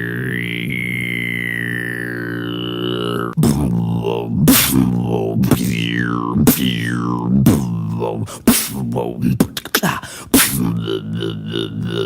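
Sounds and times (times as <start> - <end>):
beatboxed didgeridoo drone: 0.0 - 12.0
beatboxed kick and snare: 4.5 - 5.8, 6.4 - 7.7, 8.4 - 10.8.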